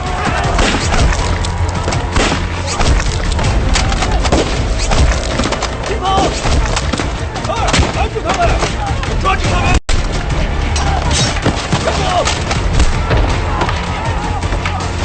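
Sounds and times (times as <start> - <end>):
people shouting: 0.0 - 15.0
gunshots and impacts: 0.2 - 8.0.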